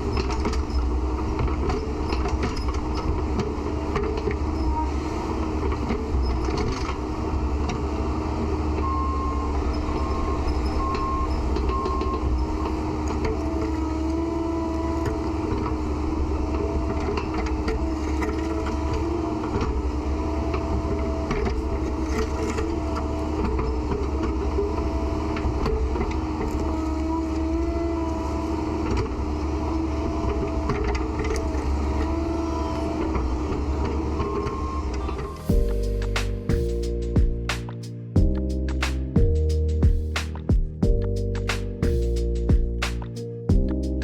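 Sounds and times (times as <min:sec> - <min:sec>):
heavy equipment engine running: 0:00.0 - 0:44.0
short warning beeps: 0:08.8 - 0:12.7.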